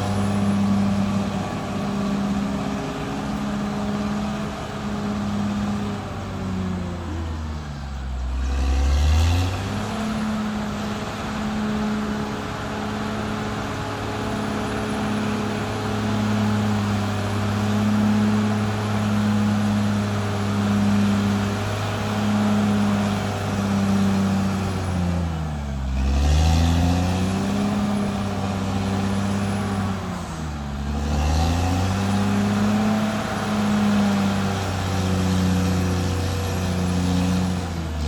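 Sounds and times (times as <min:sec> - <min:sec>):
bulldozer diesel engine running: 0:00.0 - 0:38.0.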